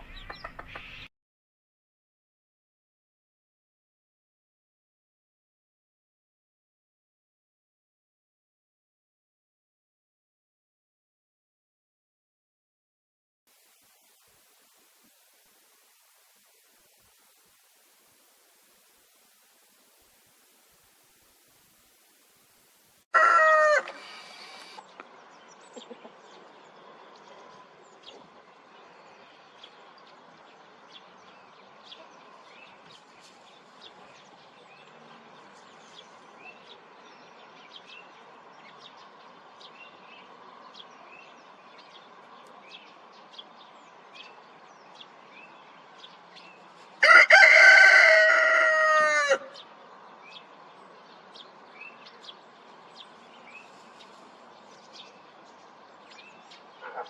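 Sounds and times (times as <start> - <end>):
faint small birds chirping: 0.0 - 1.1, 23.9 - 47.1, 49.4 - 57.0
rooster crowing: 23.1 - 24.7, 47.0 - 49.6.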